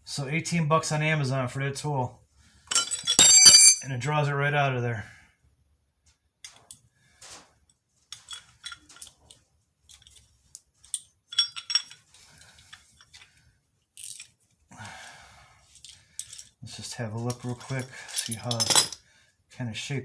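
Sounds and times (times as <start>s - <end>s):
metal tool clinking: 2.7s - 3.9s, 8.1s - 9.2s, 10.8s - 13.2s, 15.7s - 16.5s, 17.3s - 19.0s.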